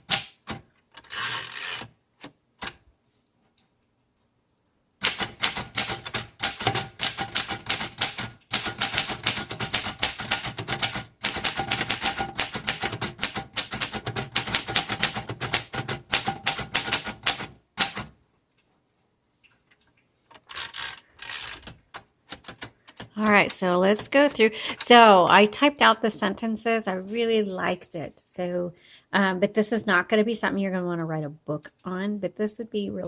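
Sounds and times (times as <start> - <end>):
typewriter keystrokes: 0.0 - 1.9, 5.0 - 18.2.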